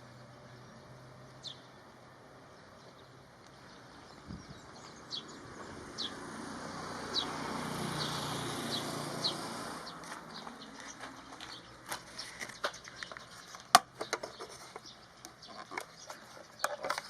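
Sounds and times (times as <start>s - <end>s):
vehicle passing by: 3.8s - 11.9s.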